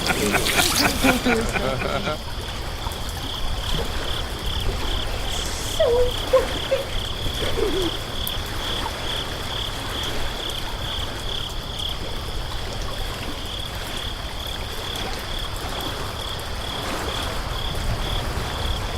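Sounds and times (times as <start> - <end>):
steady hiss: 0.0 - 2.2, 5.0 - 7.1.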